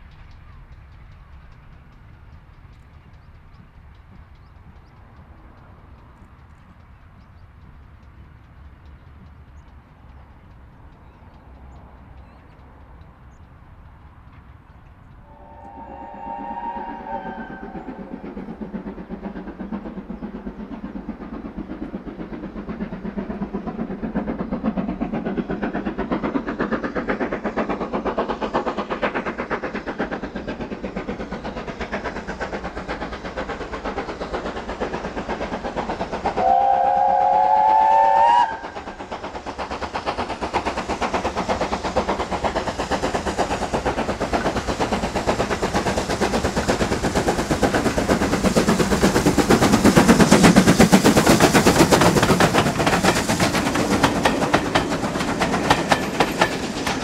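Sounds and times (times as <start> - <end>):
locomotive exhaust and wheels beating: 0.0 - 57.0
steam locomotive whistle: 15.2 - 18.6, 36.4 - 38.9.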